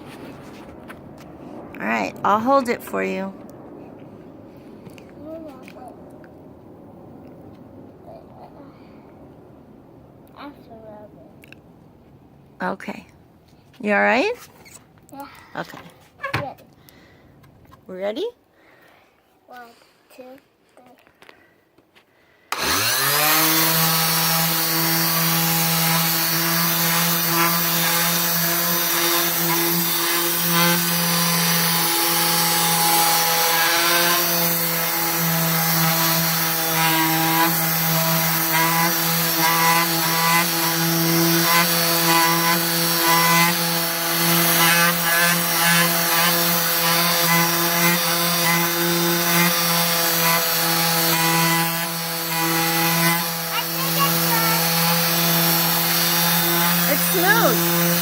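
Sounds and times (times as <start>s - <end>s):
orbital sander sanding wood: 22.5s - 58.0s.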